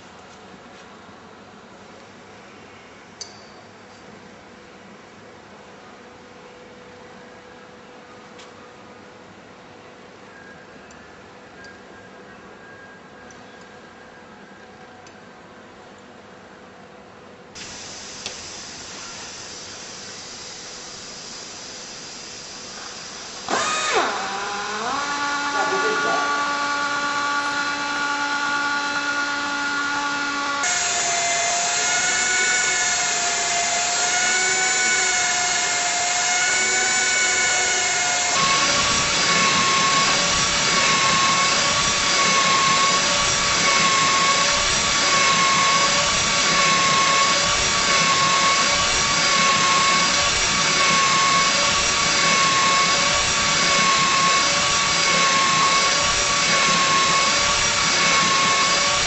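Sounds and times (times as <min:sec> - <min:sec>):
machine mechanical whine: 0:17.5 - 0:59.0.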